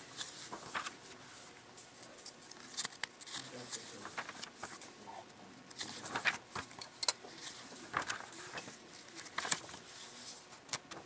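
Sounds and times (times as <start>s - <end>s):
paper pages rustling: 0.0s - 1.2s, 2.7s - 5.0s, 5.7s - 11.0s.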